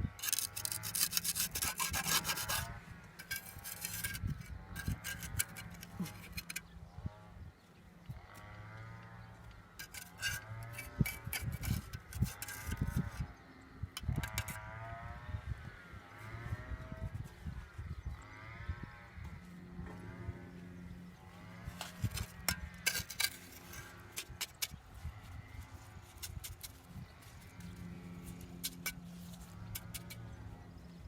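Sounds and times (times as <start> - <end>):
rough scraping strokes: 0.0 - 6.7, 9.3 - 13.4, 14.0 - 14.9, 21.3 - 31.0.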